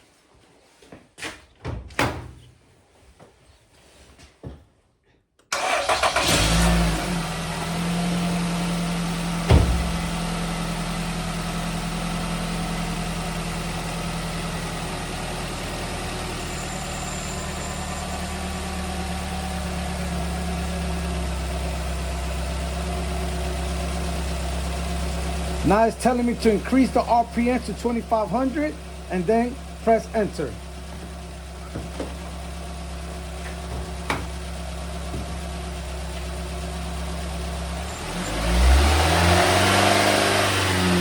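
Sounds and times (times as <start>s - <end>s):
car engine cranking and idling: 5.5s - 41.0s
sharp knock: 9.5s - 10.0s.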